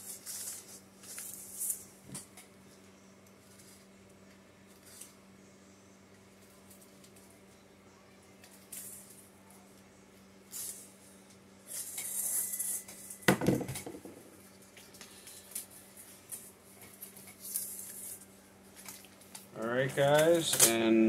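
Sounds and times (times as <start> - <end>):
packaging rustling and scraping: 0.0 - 2.3, 14.7 - 20.5
steady low hum: 0.0 - 21.0.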